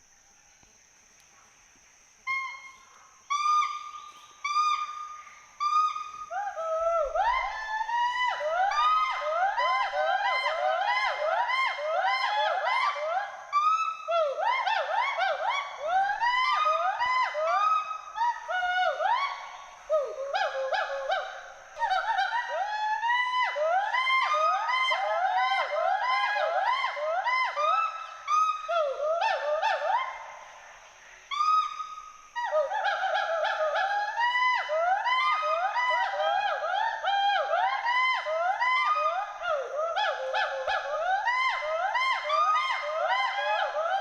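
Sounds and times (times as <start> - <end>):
gibbons whooping calls: 3.3 - 44.0
gibbons whooping: 32.4 - 44.0.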